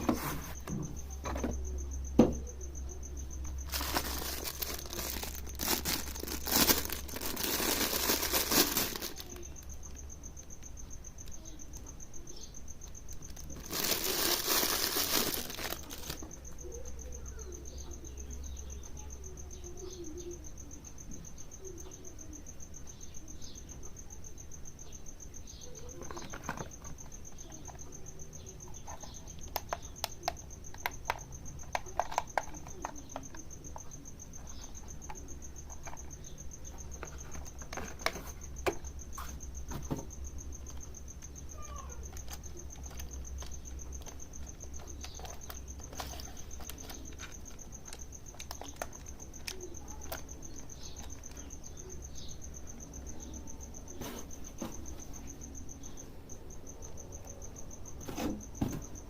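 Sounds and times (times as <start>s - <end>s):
plastic packaging crinkling: 3.6s - 9.6s, 13.3s - 16.3s.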